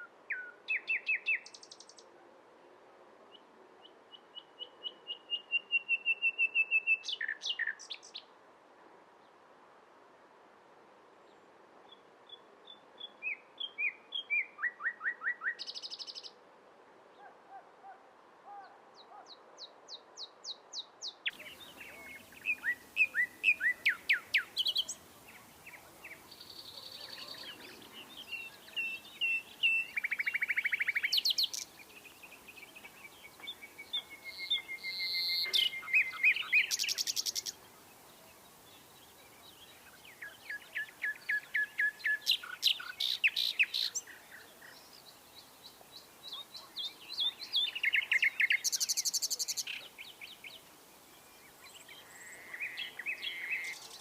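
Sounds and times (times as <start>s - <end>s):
nightingale singing: 0.0s - 2.1s, 4.1s - 8.3s, 19.9s - 54.0s
faint background hiss: 0.0s - 54.0s.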